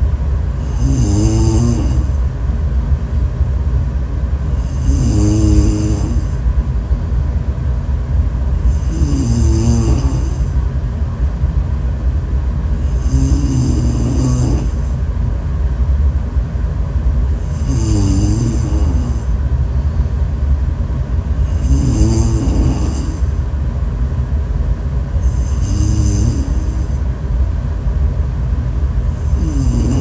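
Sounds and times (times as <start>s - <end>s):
steady low rumble: 0.0s - 30.0s
person snoring loudly: 0.6s - 2.2s, 4.6s - 6.4s, 8.6s - 10.5s, 12.8s - 14.9s, 17.4s - 19.3s, 21.4s - 23.4s, 25.2s - 27.0s, 29.1s - 30.0s.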